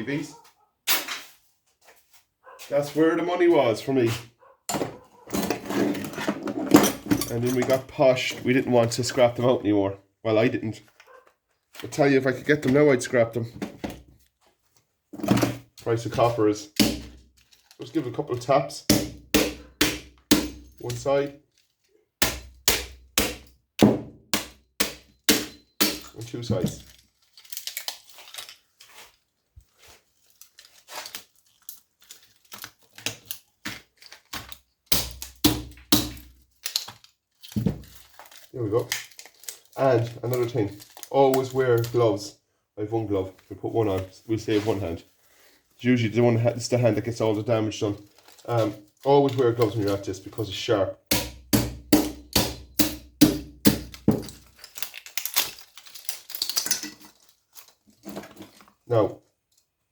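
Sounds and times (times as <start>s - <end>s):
hammer striking metal: 24.4s - 26.1s, 51.1s - 53.8s.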